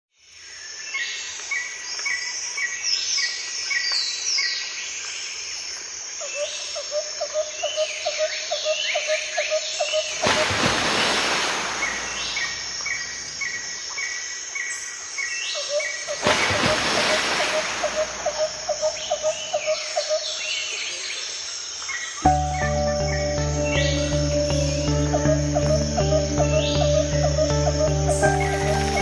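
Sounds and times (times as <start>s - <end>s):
birds chirping and whistling: 22.3s - 29.0s.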